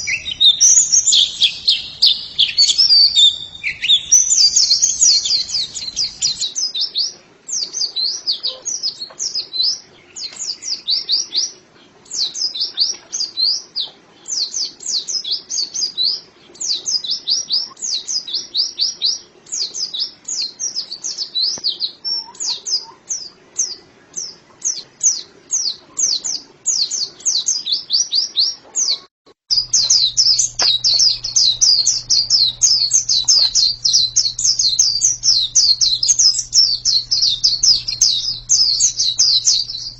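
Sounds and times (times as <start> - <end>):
steady low hum: 0.0 - 6.4, 29.5 - 39.9
small bird singing high trills: 0.0 - 39.9.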